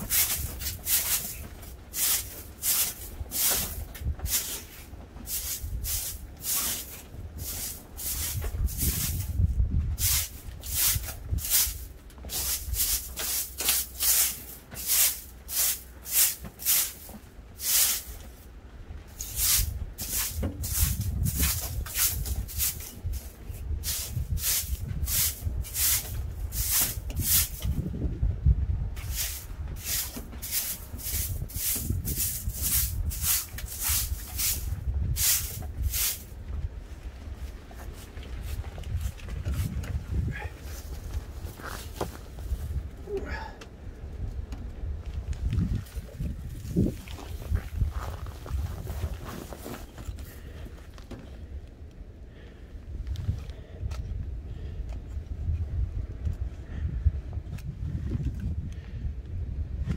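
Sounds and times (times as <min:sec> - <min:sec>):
crunching strokes in snow: 0:00.1 - 0:09.4, 0:10.0 - 0:18.2, 0:29.0 - 0:36.3, 0:45.8 - 0:50.4
low rumble: 0:17.2 - 0:59.9.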